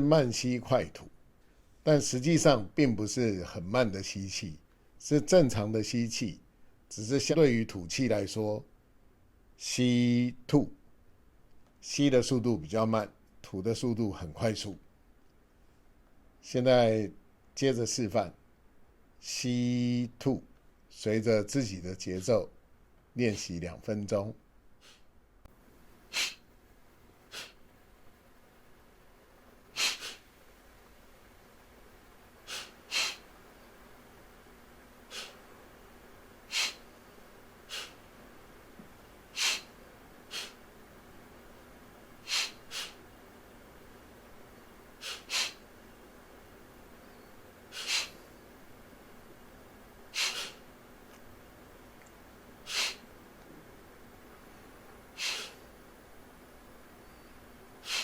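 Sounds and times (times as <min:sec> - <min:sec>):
sharp nasal exhalations: 0:24.8 - 0:25.1, 0:26.1 - 0:26.5, 0:27.3 - 0:27.6, 0:29.7 - 0:30.3, 0:32.4 - 0:33.3, 0:35.0 - 0:35.5, 0:36.5 - 0:36.9, 0:37.6 - 0:38.0, 0:39.3 - 0:40.6, 0:42.2 - 0:43.0, 0:45.0 - 0:45.7, 0:47.1 - 0:48.4, 0:50.1 - 0:50.7, 0:52.6 - 0:53.1, 0:55.2 - 0:55.7, 0:57.8 - 0:58.0.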